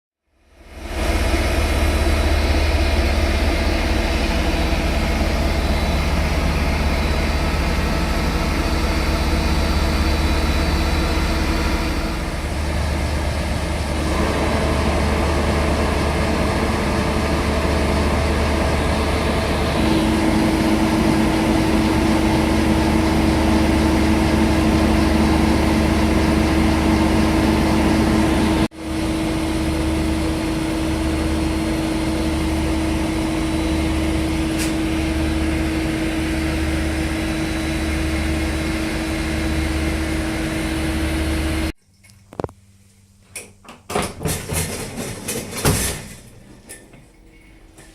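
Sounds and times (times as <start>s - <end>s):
diesel locomotive idling: 0.4s - 41.8s.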